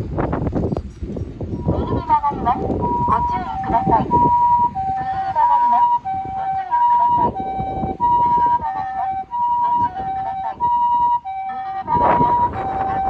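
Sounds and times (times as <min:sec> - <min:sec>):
vehicle rumble: 0:00.0 - 0:06.4
two-tone ambulance siren: 0:01.6 - 0:13.0.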